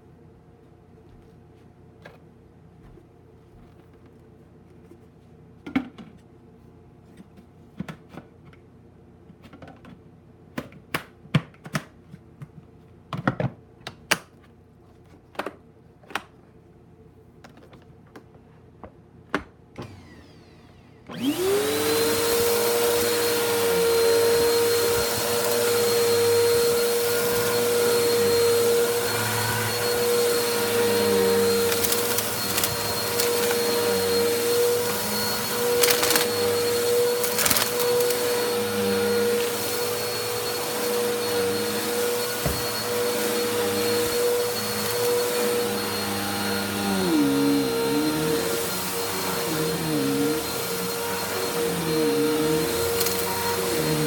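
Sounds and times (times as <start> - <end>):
vacuum cleaner motor whine: 19.8 - 54.0.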